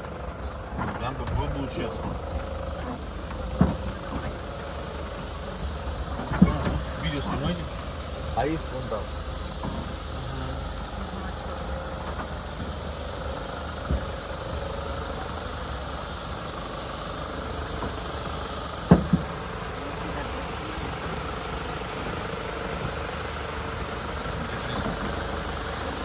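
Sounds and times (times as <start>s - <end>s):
vehicle engine idling: 0.0s - 26.0s
short knocks: 17.3s - 19.8s.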